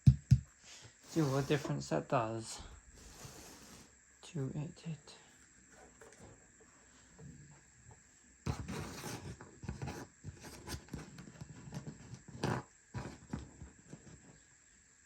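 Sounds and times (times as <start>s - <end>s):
speaker parts scraping on work surface: 1.0s - 1.8s.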